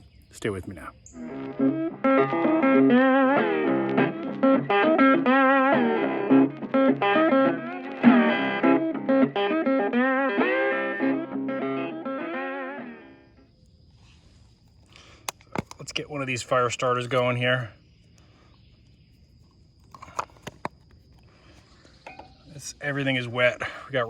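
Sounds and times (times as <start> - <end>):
electric guitar melody: 1.2 - 13.4.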